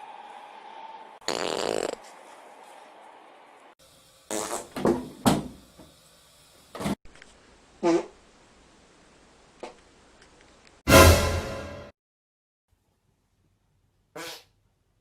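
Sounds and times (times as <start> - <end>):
farts: 1.2 - 2.0, 4.3 - 4.8, 7.8 - 8.1, 14.2 - 14.5.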